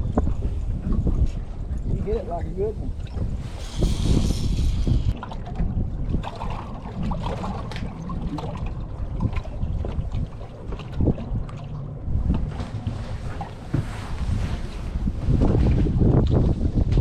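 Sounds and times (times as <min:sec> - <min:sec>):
wind buffeting microphone: 0:00.0 - 0:17.0
brief hiss: 0:03.4 - 0:05.2.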